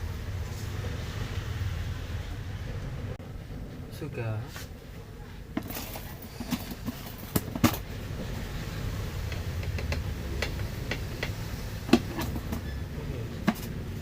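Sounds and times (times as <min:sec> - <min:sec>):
low steady rumble: 0:00.0 - 0:14.0
clicks and knocks of handling: 0:09.3 - 0:12.7.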